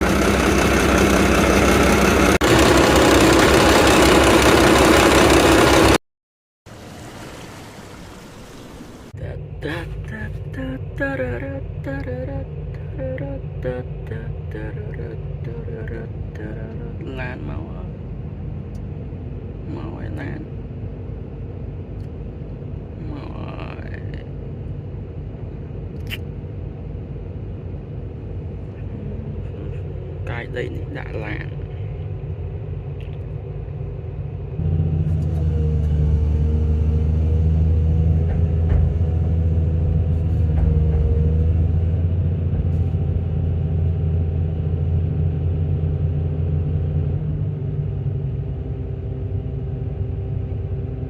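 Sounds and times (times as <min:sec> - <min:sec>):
heavy diesel engine running: 0:00.0 - 0:06.0, 0:26.6 - 0:51.0
quiet steady hum: 0:06.8 - 0:35.5
short rising whine: 0:24.2 - 0:51.0.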